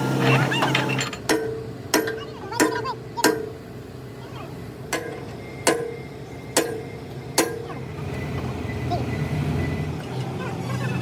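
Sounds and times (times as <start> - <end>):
low engine-like drone: 0.0 - 11.0
metal-on-metal knocks: 0.6 - 3.6, 4.9 - 6.0, 6.6 - 7.7.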